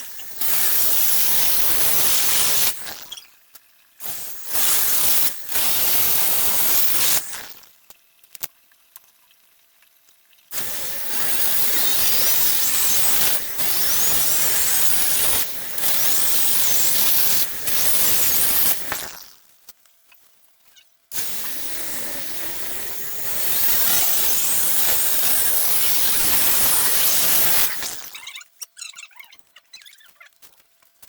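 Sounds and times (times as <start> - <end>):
power tool working wood: 10.6 - 19.3, 21.1 - 28.2.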